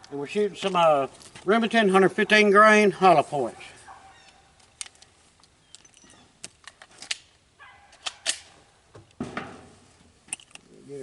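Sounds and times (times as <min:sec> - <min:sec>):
pistol clicks: 0:07.9 - 0:08.5.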